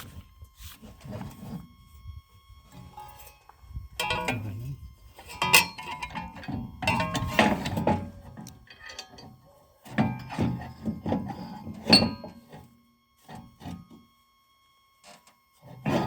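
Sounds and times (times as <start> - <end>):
metal parts and tools clattering: 2.9 - 4.6, 5.3 - 10.7.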